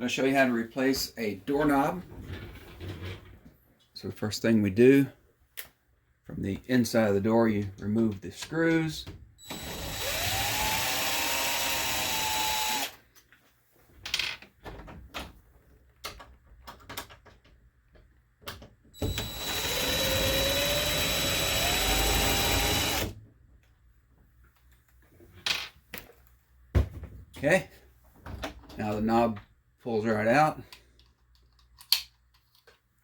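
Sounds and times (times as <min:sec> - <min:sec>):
power drill motor whine: 0:09.4 - 0:13.0, 0:19.0 - 0:23.1
light clicks and handling knocks: 0:13.2 - 0:18.9.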